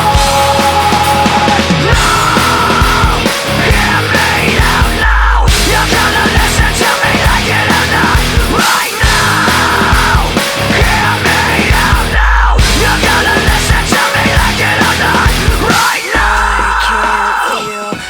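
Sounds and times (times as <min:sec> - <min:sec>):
deep bass hit: 0:00.0 - 0:16.8
nu-metal rock music: 0:00.0 - 0:18.0.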